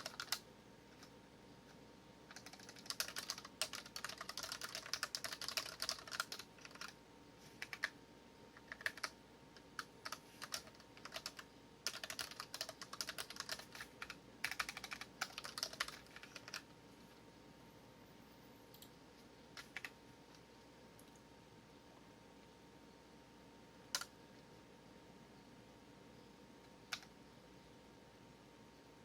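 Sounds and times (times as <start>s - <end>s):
mechanical keyboard typing: 0.0s - 1.1s, 2.3s - 7.0s, 7.6s - 8.0s, 8.6s - 16.7s, 19.6s - 20.0s, 23.9s - 24.1s, 26.9s - 27.1s.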